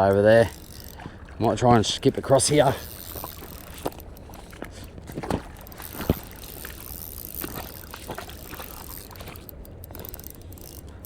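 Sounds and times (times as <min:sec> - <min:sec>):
handling knocks and clicks: 0:00.0 - 0:11.0.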